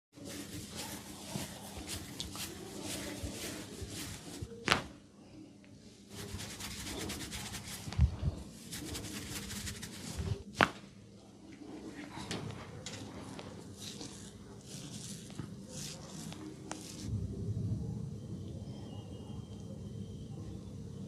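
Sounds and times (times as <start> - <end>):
hands rubbing hair: 0.2 - 4.9, 6.1 - 10.8, 13.1 - 17.1.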